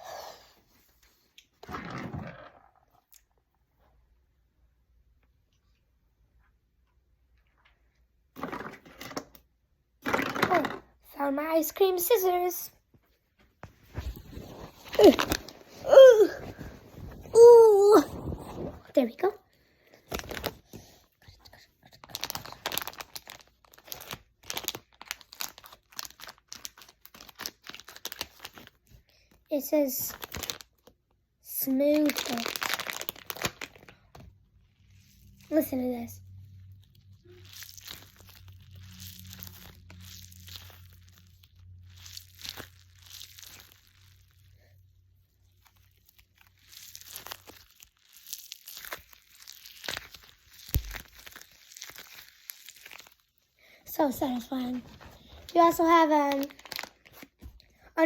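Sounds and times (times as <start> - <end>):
crinkly packaging crackling: 13.9 - 29.0, 29.6 - 58.0.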